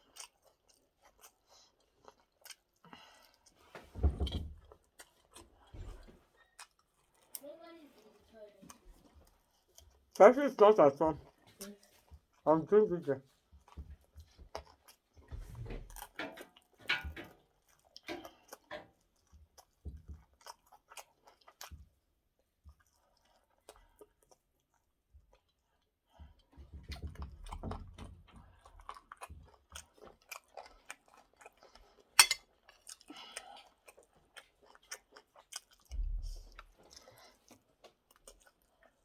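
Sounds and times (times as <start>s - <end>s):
person chewing food: 0.0s - 3.8s, 4.6s - 7.4s, 8.7s - 12.4s, 13.2s - 39.0s.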